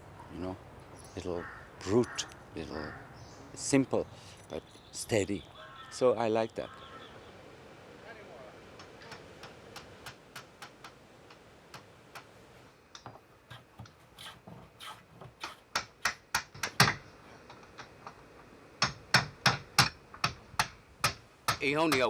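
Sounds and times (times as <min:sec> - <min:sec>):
hand tools knocking on timber: 0:08.9 - 0:11.0, 0:11.8 - 0:17.4.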